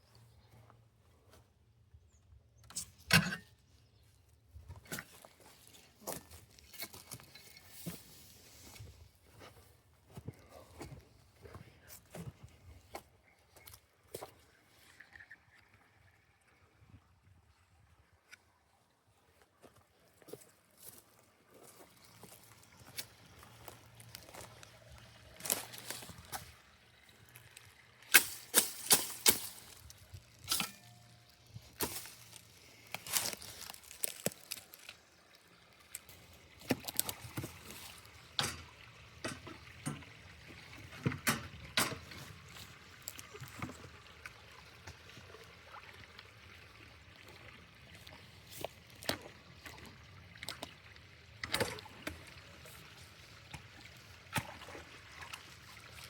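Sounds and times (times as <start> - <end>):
water trickling and pouring: 4.8 - 8.9, 13.6 - 18.4, 20.2 - 56.0
sharp splashes and knocks: 27.3 - 32.4, 53.6 - 56.0.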